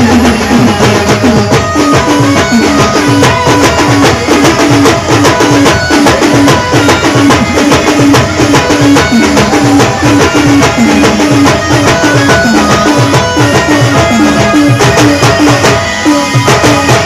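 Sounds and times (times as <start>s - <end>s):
band playing dance music: 0.0s - 17.0s.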